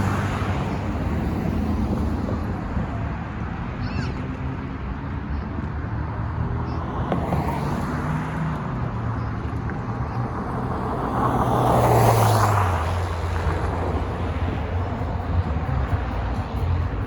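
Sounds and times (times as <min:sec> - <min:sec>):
vehicle passing by: 0:03.6 - 0:17.0.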